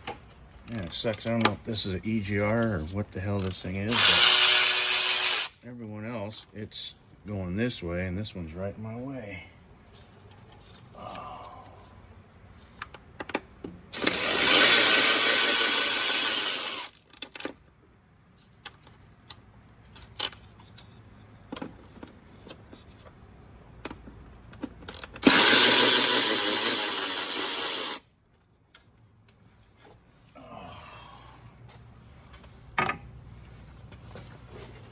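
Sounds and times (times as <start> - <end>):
handheld power tool running: 3.9 - 5.6, 13.9 - 17.0, 24.9 - 28.0.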